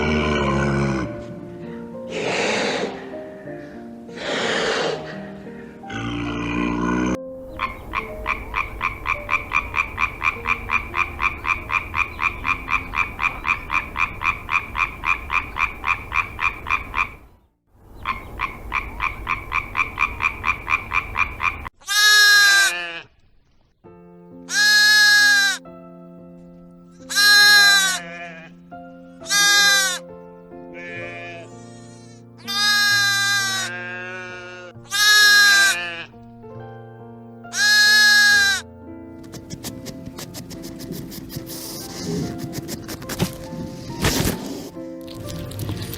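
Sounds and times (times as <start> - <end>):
background music held notes: 0.0 - 15.6, 23.8 - 45.9
frog trilling: 5.9 - 17.3, 18.0 - 23.2, 24.5 - 25.6, 27.1 - 28.5, 29.2 - 30.0, 30.8 - 36.2, 37.5 - 38.6
loud bleats: 21.8 - 23.1, 24.5 - 25.6, 27.1 - 28.6, 29.2 - 30.0, 30.8 - 36.2, 37.5 - 38.6.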